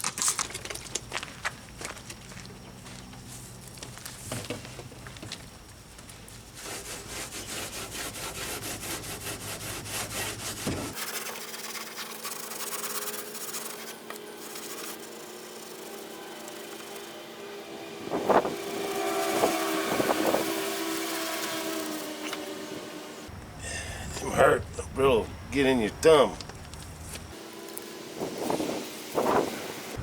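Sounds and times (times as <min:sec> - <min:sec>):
hand scrubbing and scraping surface: 0:06.5 - 0:17.2, 0:17.9 - 0:23.3, 0:27.0 - 0:30.0.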